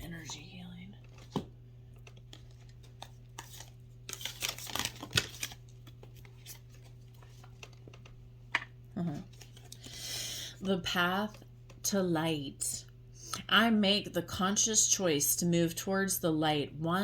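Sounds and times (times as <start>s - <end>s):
cards being shuffled: 1.0s - 9.8s.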